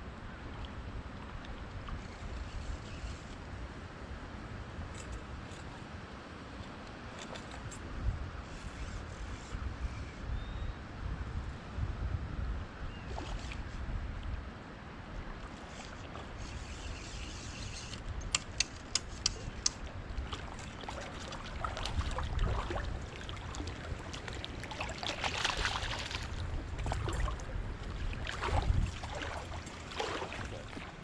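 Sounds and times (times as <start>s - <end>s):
water splashing and trickling: 15.4s - 31.0s
sharp clicks: 17.8s - 19.8s.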